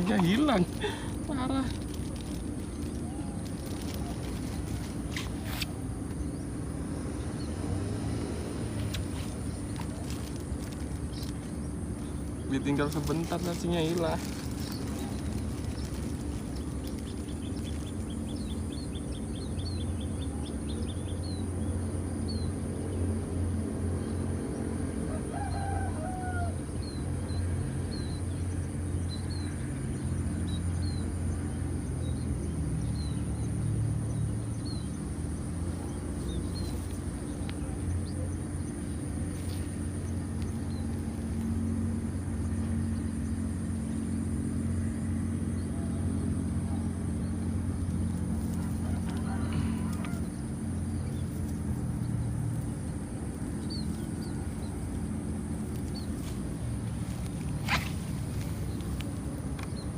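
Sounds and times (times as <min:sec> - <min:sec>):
insects buzzing: 0:00.0 - 0:59.9
rooster crowing: 0:25.0 - 0:26.8, 0:48.5 - 0:50.7.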